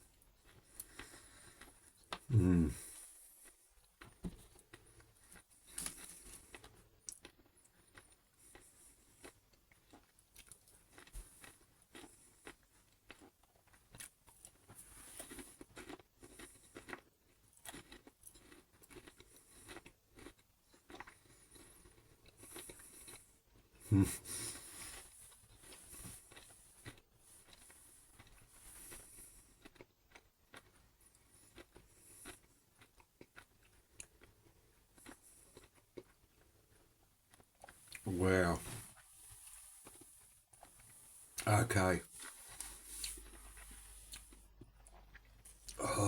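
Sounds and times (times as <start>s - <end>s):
person chewing crunchy food: 0.1s - 41.4s, 42.0s - 46.0s.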